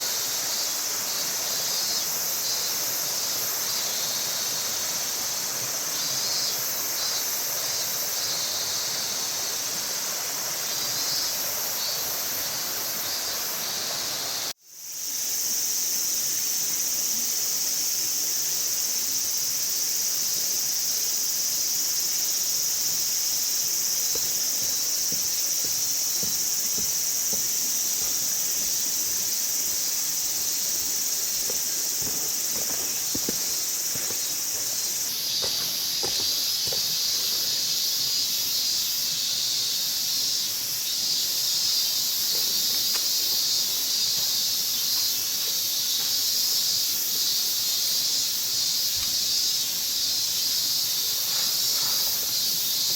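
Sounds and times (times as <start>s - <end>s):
insect chirps: 0.0s - 52.9s
insects droning: 0.0s - 52.9s.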